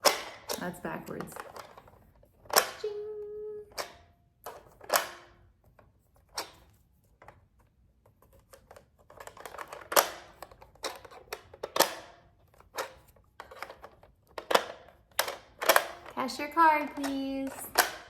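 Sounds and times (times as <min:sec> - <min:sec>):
plastic toy handling clatter: 0:00.0 - 0:02.8, 0:03.7 - 0:18.0
plastic toy keys clicking: 0:08.5 - 0:18.0.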